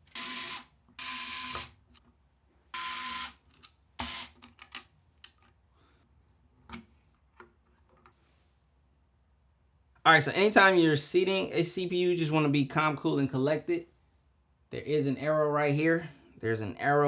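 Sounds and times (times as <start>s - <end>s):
electric screwdriver whine: 0.1s - 1.8s, 2.8s - 3.4s.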